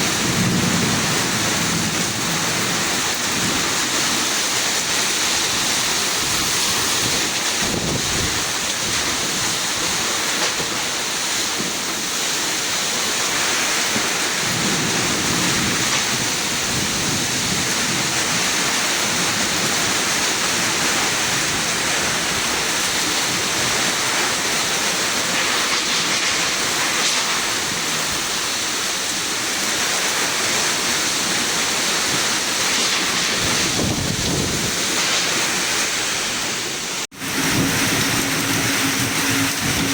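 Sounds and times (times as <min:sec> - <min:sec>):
thunder rumbling: 0:00.0 - 0:10.2, 0:14.2 - 0:26.8, 0:37.1 - 0:39.9
heavy rain pouring: 0:00.0 - 0:39.9.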